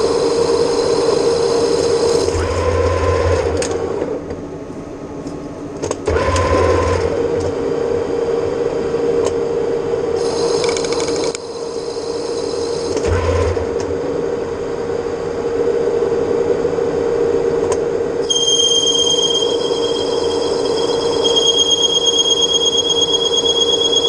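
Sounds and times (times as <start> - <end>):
high cutting whine: 0.0 - 3.6, 10.1 - 15.7, 18.2 - 24.0
lathe machine hum: 0.0 - 4.3, 6.5 - 18.2, 19.0 - 24.0
high-pitched cutting noise: 18.2 - 24.0.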